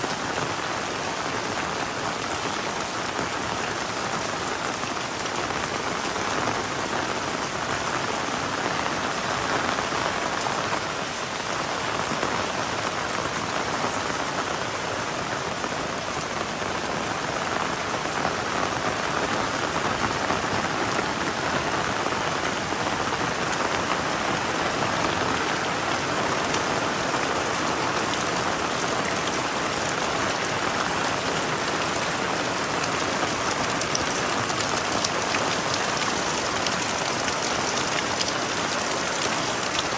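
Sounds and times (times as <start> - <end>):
heavy rain pouring: 0.0 - 39.9.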